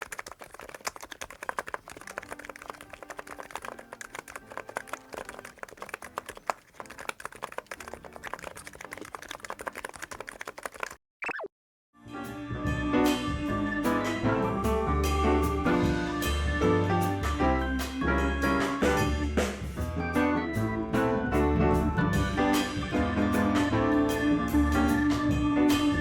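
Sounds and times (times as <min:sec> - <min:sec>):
fast keyboard typing: 0:00.0 - 0:11.0
music: 0:12.0 - 0:26.0.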